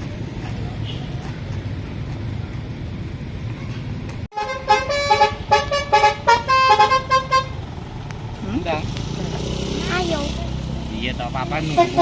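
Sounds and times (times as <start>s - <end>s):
musical bus horn tune: 4.3s - 7.6s, 11.7s - 12.0s.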